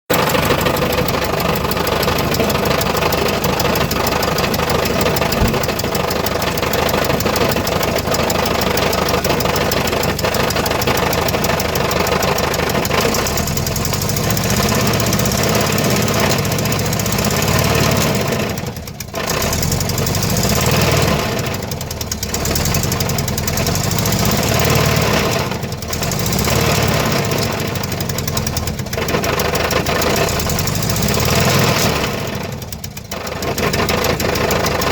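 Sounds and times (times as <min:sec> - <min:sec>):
van engine running abnormally: 0:00.1 - 0:34.9.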